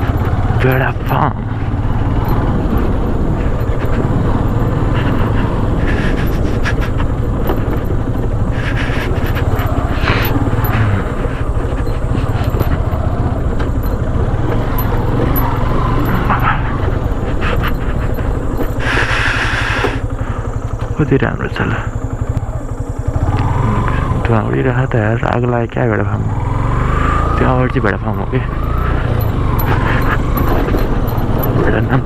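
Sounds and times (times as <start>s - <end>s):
wind noise: 0.0s - 20.7s
road knocks: 0.0s - 26.2s, 26.9s - 32.0s
motorcycle engine rumbling: 0.0s - 32.0s.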